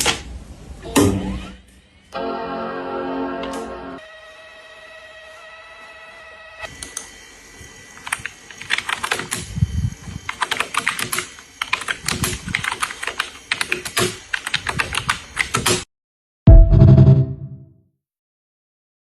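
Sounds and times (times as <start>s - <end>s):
typing on computer keyboard: 8.1s - 9.5s, 10.3s - 15.8s
loud sustained tone: 16.5s - 17.6s.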